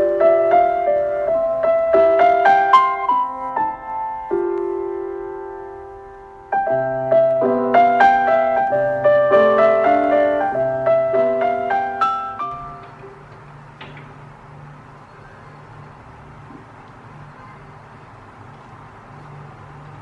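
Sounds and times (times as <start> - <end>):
gentle instrumental music: 0.0 - 13.2.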